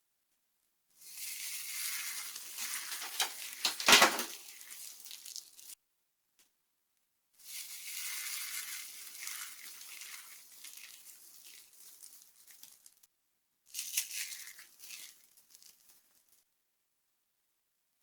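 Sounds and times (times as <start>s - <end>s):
dry soap crunching: 1.0s - 5.7s, 7.5s - 13.0s, 13.7s - 16.4s.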